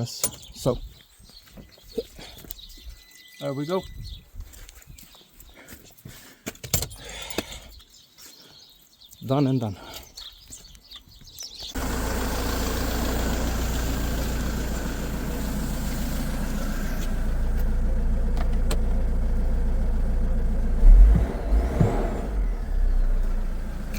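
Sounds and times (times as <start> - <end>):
van engine starting and running: 11.7 - 23.9.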